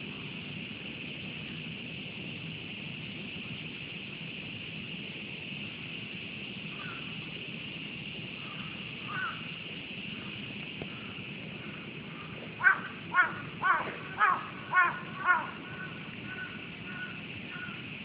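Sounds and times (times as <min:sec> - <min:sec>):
high-pitched background hum: 0:00.0 - 0:18.0
crow cawing: 0:06.7 - 0:07.1, 0:08.4 - 0:09.5, 0:10.1 - 0:17.9.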